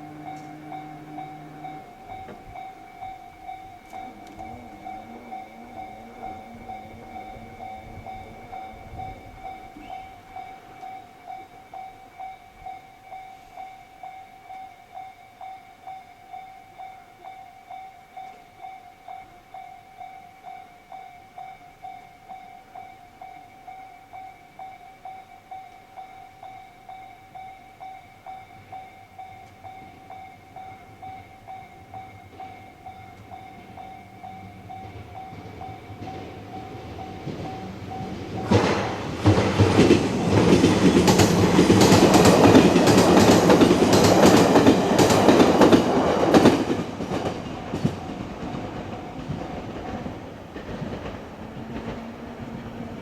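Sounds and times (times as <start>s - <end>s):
train wheels clattering over rails: 0.0s - 11.0s, 29.4s - 53.0s
level crossing warning bell: 0.0s - 53.0s.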